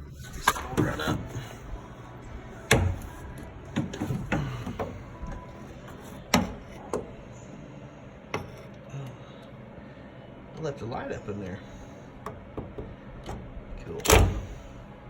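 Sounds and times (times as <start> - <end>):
metal tools knocking and clunking: 2.6 - 7.2, 8.4 - 8.7, 12.2 - 14.6.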